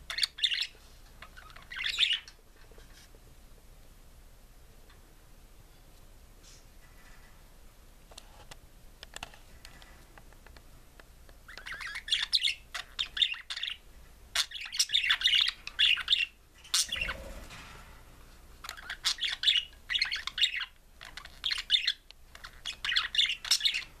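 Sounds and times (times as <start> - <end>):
budgerigar warbling: 16.7 - 17.3.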